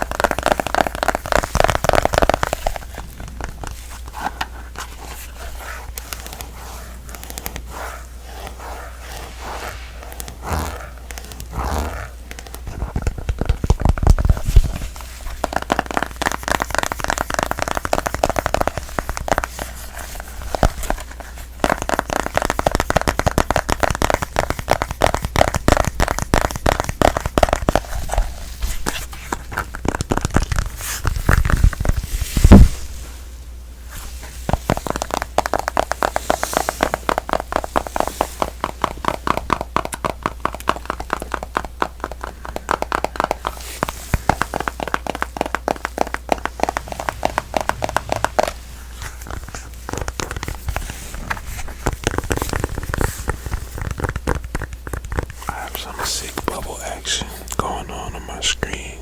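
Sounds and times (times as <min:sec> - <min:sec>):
fingers tapping on smartphone: 0:15.4 - 0:19.8, 0:20.5 - 0:27.9, 0:34.6 - 0:48.6, 0:49.3 - 0:58.8.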